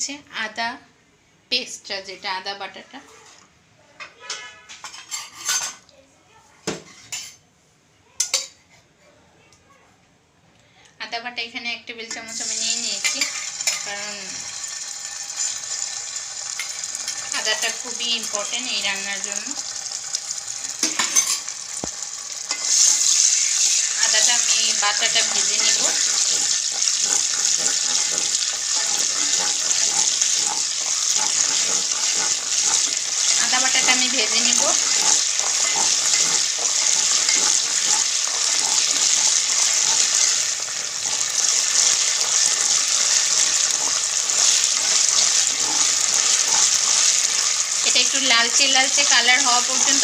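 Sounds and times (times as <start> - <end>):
metal spoon clinking on pan: 8.2 - 8.6, 12.1 - 14.0, 16.5 - 18.4, 20.8 - 21.5, 25.1 - 47.6
paste sizzling in hot oil: 12.1 - 50.0.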